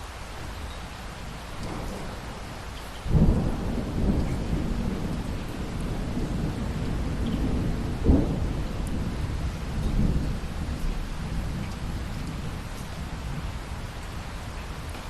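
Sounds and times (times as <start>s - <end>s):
steady rain: 0.0s - 15.0s
thunder cracking and rumbling: 1.3s - 15.0s.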